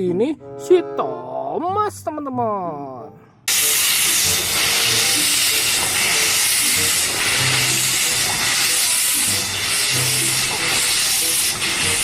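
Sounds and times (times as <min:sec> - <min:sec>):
faint background music: 0:00.0 - 0:12.0
loud steady hiss: 0:03.5 - 0:12.0.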